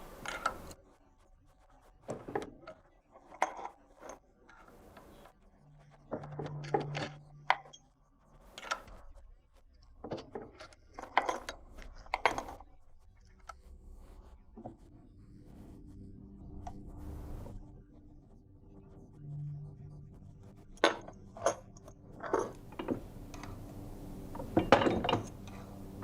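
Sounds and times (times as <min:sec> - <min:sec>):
low hum: 0:12.8 - 0:26.0.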